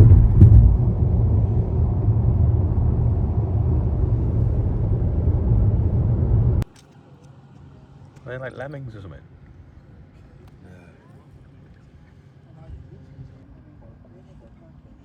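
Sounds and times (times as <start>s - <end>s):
car driving rumble from inside: 0.0s - 6.7s.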